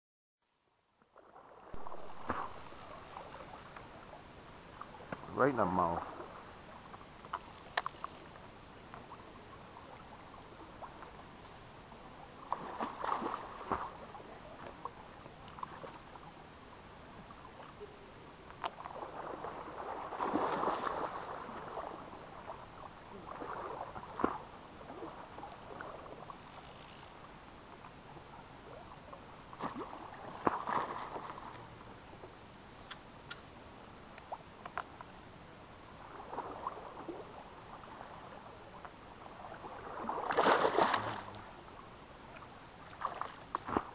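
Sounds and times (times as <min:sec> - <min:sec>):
river water running: 0:00.8 - 0:43.9
water splashing: 0:01.2 - 0:08.3, 0:12.4 - 0:16.1, 0:18.6 - 0:26.3, 0:29.5 - 0:31.7, 0:39.3 - 0:43.9.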